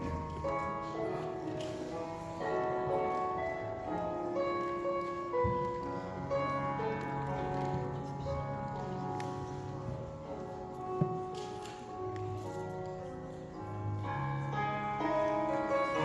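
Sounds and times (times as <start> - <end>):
melody of held notes: 12.8 - 16.0.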